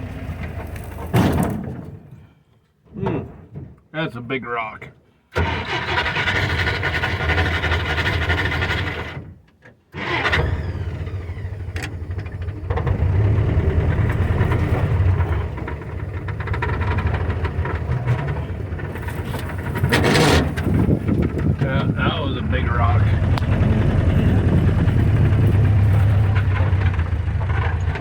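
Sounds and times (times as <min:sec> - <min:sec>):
engine running under load: 0:10.0 - 0:28.0.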